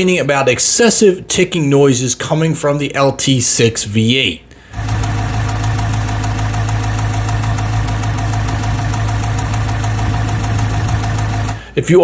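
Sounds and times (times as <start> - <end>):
rapid mechanical ticking: 4.7 - 11.8
car engine idling: 4.8 - 11.7.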